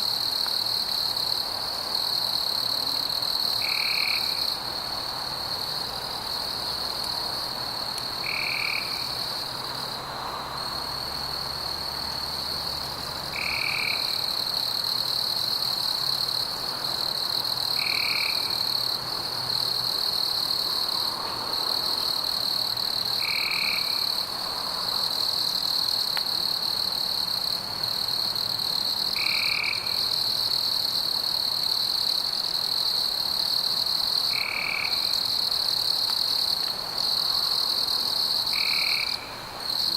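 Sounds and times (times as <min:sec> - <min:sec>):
high-pitched insect trill: 0:10.6 - 0:39.9.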